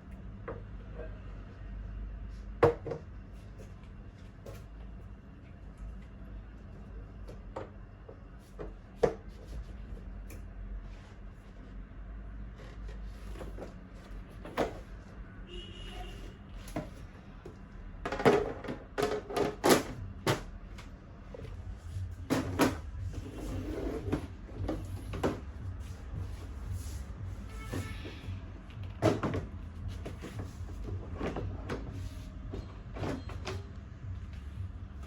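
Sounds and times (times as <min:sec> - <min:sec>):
plastic parts knocking and clicking: 0:18.1 - 0:20.5.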